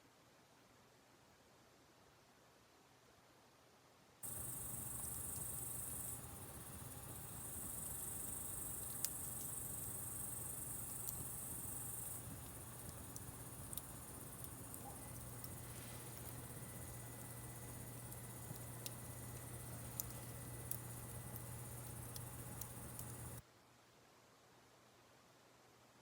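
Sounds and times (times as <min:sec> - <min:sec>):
crickets chirring: 0:04.2 - 0:23.4
wood fire crackling: 0:04.2 - 0:23.4.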